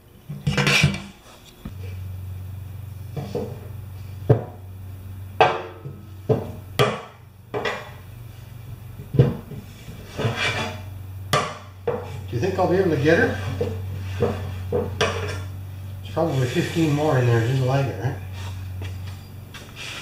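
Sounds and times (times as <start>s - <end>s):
steady low hum: 0.0s - 20.0s
knocks and clatters of tools: 0.3s - 1.2s, 5.4s - 8.0s, 9.0s - 10.7s.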